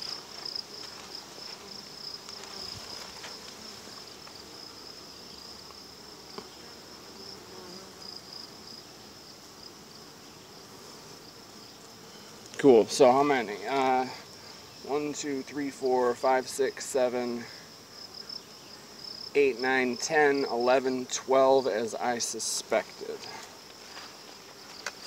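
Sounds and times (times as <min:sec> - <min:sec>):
high-pitched insect trill: 0:00.0 - 0:05.9, 0:17.7 - 0:22.2
honey bees buzzing: 0:00.0 - 0:25.0.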